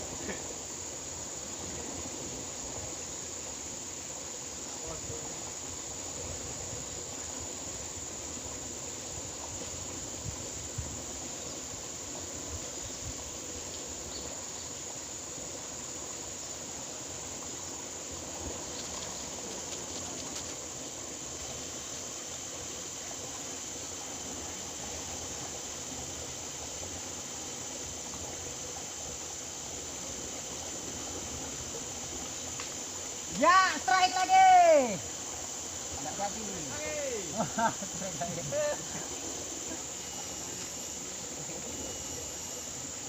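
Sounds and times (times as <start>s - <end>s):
flowing water rushing: 0.0s - 43.0s
high-pitched hiss: 0.0s - 43.0s
faint ticks: 18.6s - 20.7s, 32.2s - 32.8s.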